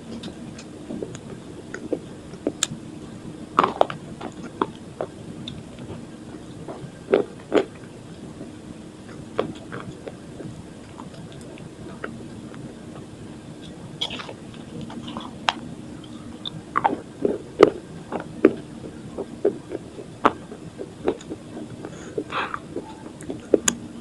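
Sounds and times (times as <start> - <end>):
crunchy biting and chewing: 3.6 - 5.9, 7.1 - 7.8, 14.0 - 18.6, 19.2 - 23.7.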